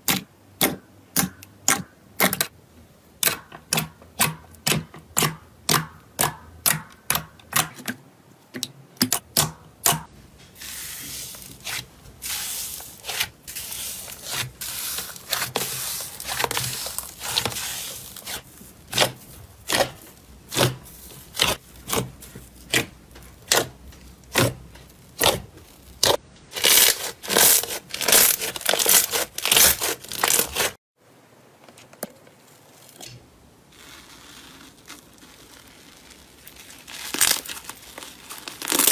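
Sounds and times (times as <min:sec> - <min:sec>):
slime clicking and crackling: 0:11.4 - 0:30.8, 0:33.8 - 0:38.9.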